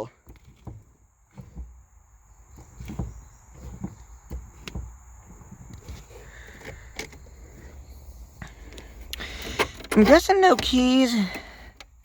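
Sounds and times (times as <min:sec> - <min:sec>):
brake pedal thumps and clicks: 0:00.0 - 0:12.0.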